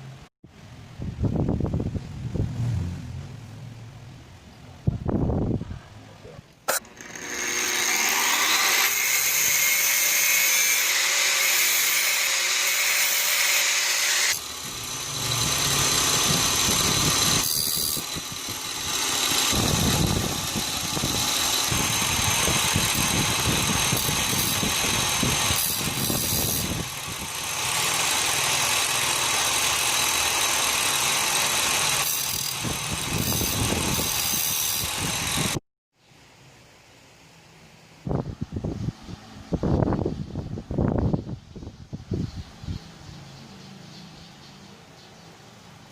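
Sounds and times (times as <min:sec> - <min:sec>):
power tool motor whine: 0:06.7 - 0:35.6.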